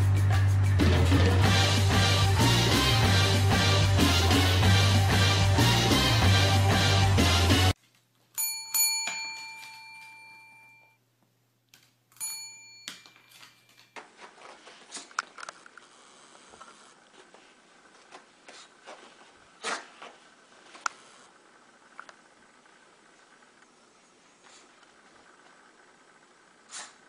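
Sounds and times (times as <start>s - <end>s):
bell-like chime ringing: 8.4s - 11.0s, 12.2s - 13.8s.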